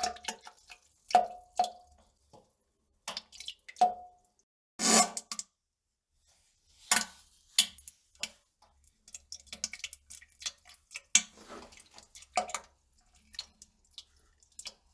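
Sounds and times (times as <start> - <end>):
drips: 6.9 - 14.9.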